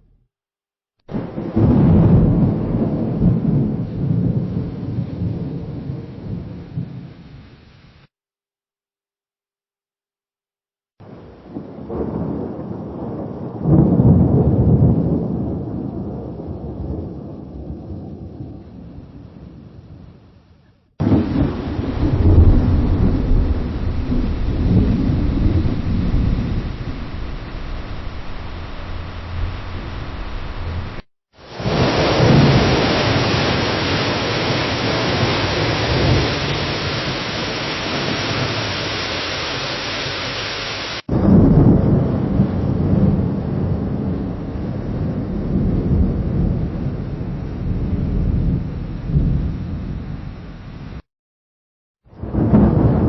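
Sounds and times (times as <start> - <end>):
lightning strike crack: 1.1 - 7.3, 11.0 - 18.6, 21.0 - 47.0, 52.2 - 53.0
thunder rumbling: 1.1 - 7.7, 11.0 - 20.4, 21.0 - 51.0, 52.1 - 53.0.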